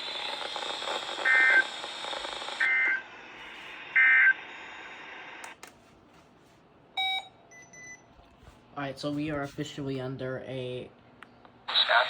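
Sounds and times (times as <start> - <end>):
radio static: 11.7 - 12.0.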